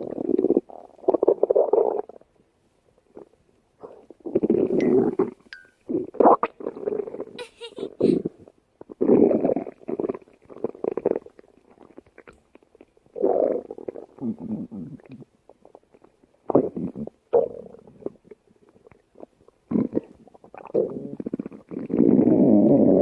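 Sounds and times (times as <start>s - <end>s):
stomach growling: 0.0s - 2.2s, 8.0s - 23.0s.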